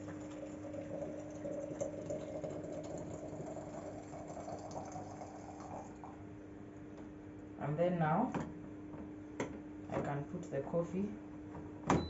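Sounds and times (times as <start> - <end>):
water pouring into container: 0.0 - 6.1
low electrical hum: 0.0 - 12.0.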